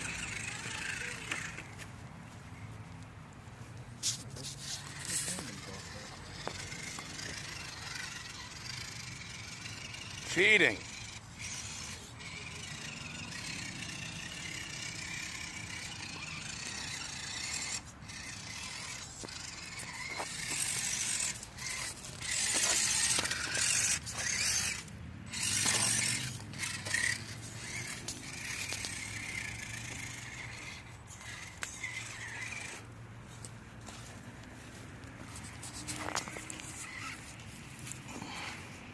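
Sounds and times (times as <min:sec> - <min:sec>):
electric motor and drivetrain whining: 0:00.0 - 0:02.0, 0:04.1 - 0:38.9
scraping over obstacles: 0:15.7 - 0:32.7.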